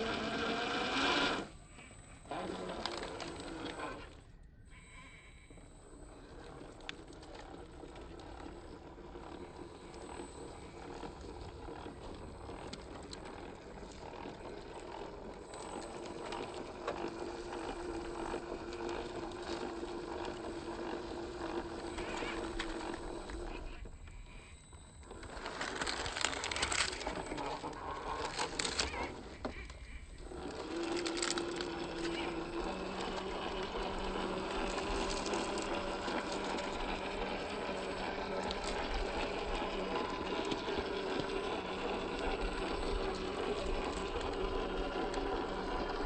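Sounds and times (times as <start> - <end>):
small electric motor whining: 0.0 - 46.0
tyres crunching on rough ground: 25.1 - 45.4.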